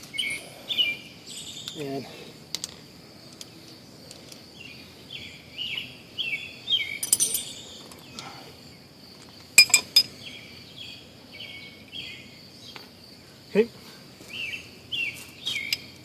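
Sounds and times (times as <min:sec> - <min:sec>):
bird chirping: 0:00.0 - 0:02.0, 0:04.5 - 0:08.9, 0:09.6 - 0:13.4, 0:14.3 - 0:16.0
insect droning: 0:00.0 - 0:16.0
metal hand tools clinking: 0:07.0 - 0:07.6, 0:09.6 - 0:10.1.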